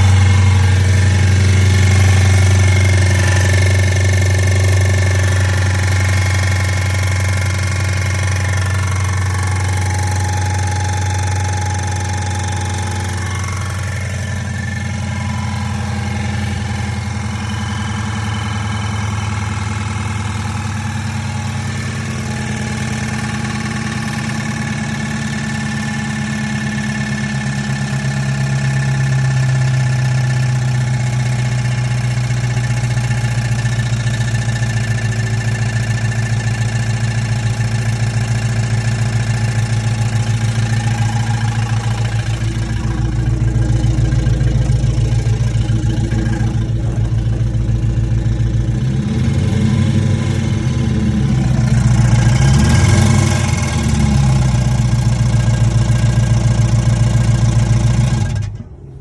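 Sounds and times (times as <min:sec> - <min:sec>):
car engine idling: 0:00.0 - 0:59.0
rhythmic engine noise: 0:00.0 - 0:59.0.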